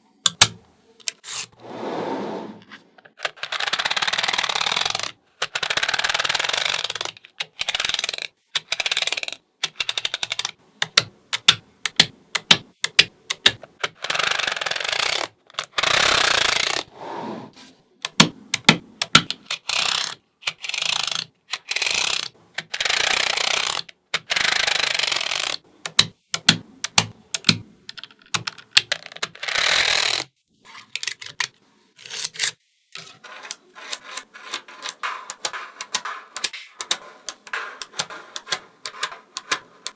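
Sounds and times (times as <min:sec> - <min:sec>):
magnetic balls clicking together: 0:00.2 - 0:01.2, 0:03.2 - 0:16.8, 0:18.1 - 0:30.3, 0:33.0 - 0:39.9
balls rattling: 0:33.0 - 0:39.9.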